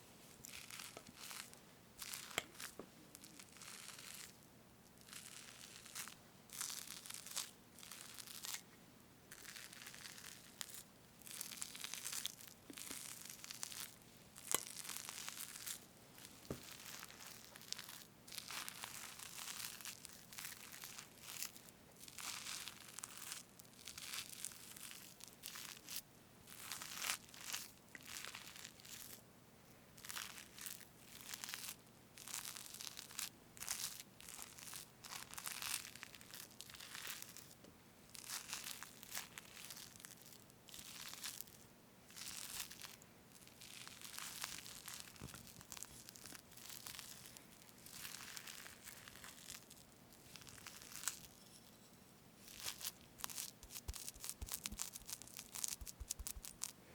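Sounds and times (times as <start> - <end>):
whipped cream being cut squelching: 52.5 - 56.7.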